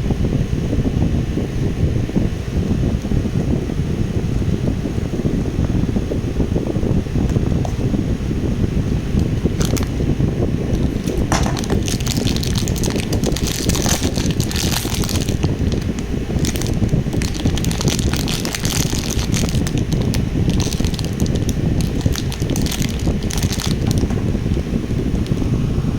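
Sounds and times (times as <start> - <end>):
steady low rumble: 0.0 - 25.9
plastic packaging crinkling: 9.2 - 9.9, 10.7 - 25.4.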